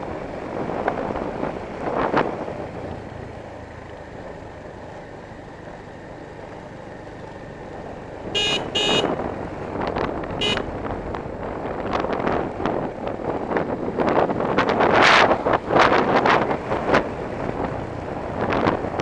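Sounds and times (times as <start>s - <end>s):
wind noise on microphone: 0.0s - 2.8s, 8.3s - 19.0s
motorbike engine and road noise: 0.0s - 19.0s
vehicle horn beeping: 8.4s - 9.2s, 10.4s - 10.7s.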